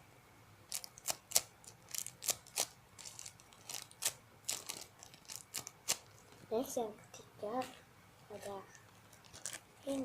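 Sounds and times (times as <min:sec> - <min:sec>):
squishy toy crinkling and crackling: 0:00.7 - 0:06.5, 0:08.4 - 0:10.0.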